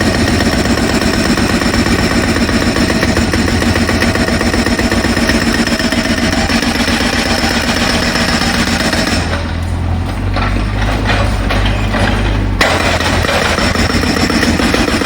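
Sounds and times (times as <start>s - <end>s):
jackhammer rattling: 0.0s - 15.0s.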